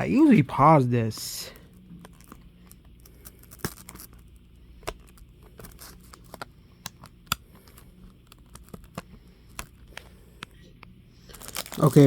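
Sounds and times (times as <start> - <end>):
plastic wrap crackling: 11.2 - 12.0.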